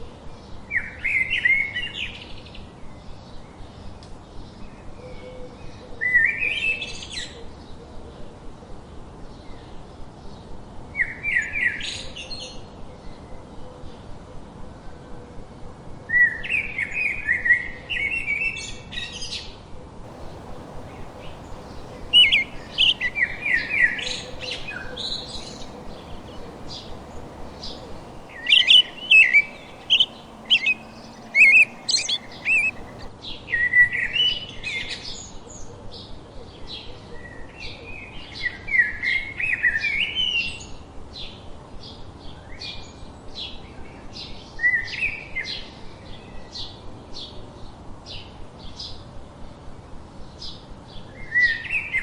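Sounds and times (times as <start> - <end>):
faint outdoor background noise: 20.1 - 33.1
songbird chirping: 20.1 - 33.1.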